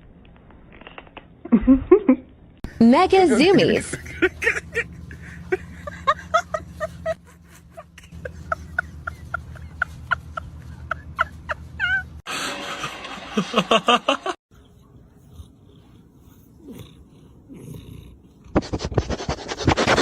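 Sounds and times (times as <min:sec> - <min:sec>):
steady low hum: 0:02.6 - 0:18.5.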